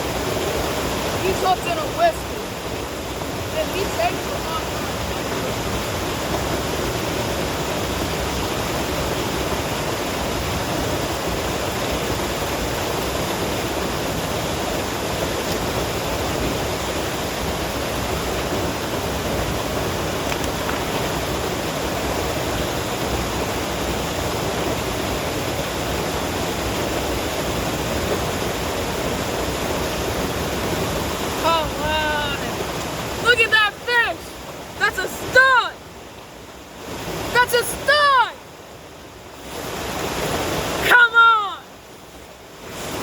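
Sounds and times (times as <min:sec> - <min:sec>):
water rushing over spillway: 0:00.0 - 0:43.0.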